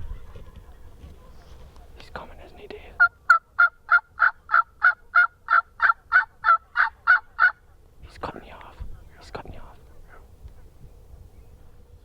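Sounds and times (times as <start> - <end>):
turkey yelps: 3.0 - 7.6.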